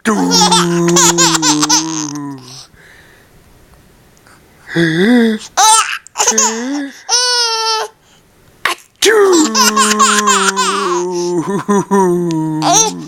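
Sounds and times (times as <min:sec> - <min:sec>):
baby laughing: 0:00.1 - 0:02.2, 0:05.6 - 0:07.9, 0:08.7 - 0:12.0, 0:12.6 - 0:13.0
baby squealing: 0:09.4 - 0:11.0.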